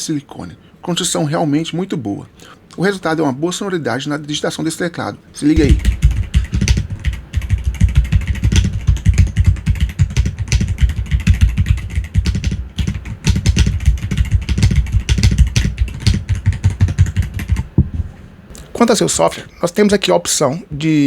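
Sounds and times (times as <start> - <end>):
mechanical keyboard typing fast: 5.6 - 17.7.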